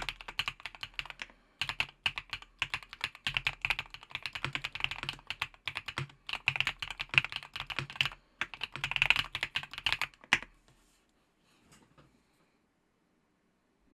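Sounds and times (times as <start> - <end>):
typing on keyboard: 0.0 - 10.5.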